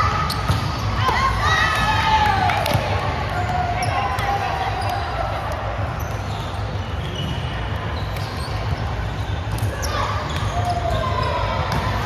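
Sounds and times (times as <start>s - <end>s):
shoe squeaks: 0.1s - 1.0s, 6.0s - 12.0s.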